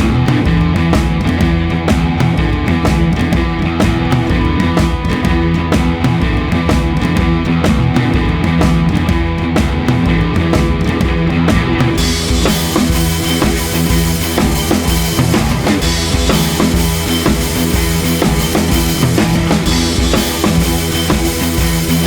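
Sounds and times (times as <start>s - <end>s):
drum kit beat: 0.0s - 22.0s
rock music: 0.0s - 22.0s
cymbals: 12.0s - 22.0s.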